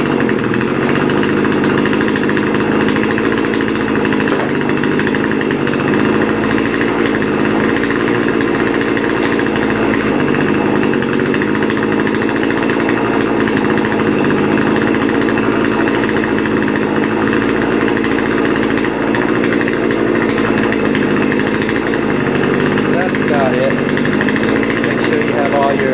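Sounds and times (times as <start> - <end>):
chainsaw cutting wood: 0.0 - 25.9.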